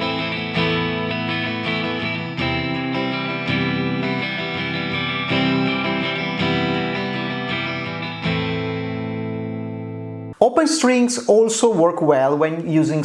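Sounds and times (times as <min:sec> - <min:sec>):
guitar strumming slow chords: 0:00.0 - 0:10.4.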